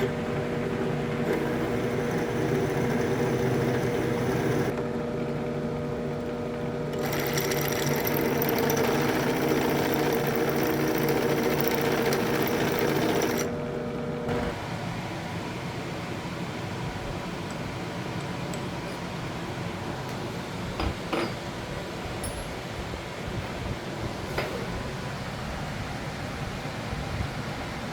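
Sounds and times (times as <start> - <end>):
small electric motor running: 1.2 - 4.7, 7.0 - 13.5.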